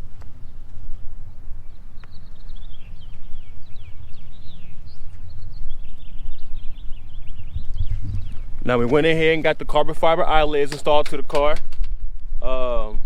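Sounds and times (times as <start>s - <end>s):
birds chirping: 0.0s - 11.5s
low rumble: 7.3s - 10.6s.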